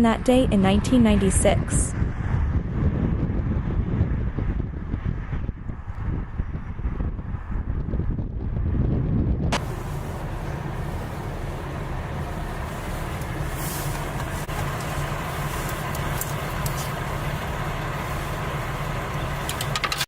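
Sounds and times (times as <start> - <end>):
traffic rumbling: 0.0 - 20.0
faint hum: 9.6 - 19.8.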